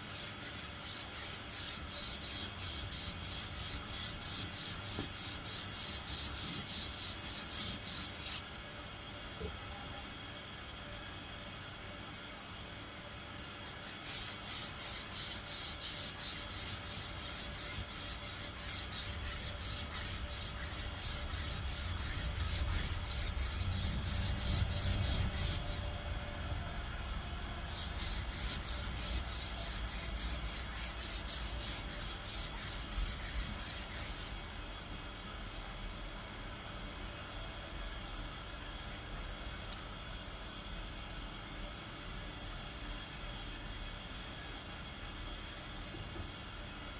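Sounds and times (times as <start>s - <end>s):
back-and-forth scraping strokes: 0.0s - 8.4s, 13.7s - 26.0s, 27.6s - 34.3s.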